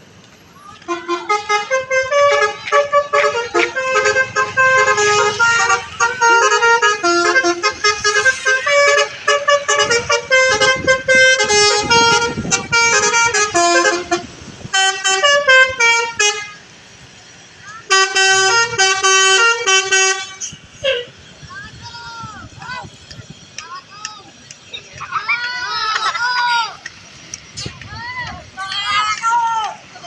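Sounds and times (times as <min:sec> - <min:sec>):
multi-trumpet air horn melody: 0:00.9 - 0:16.7, 0:17.9 - 0:21.1.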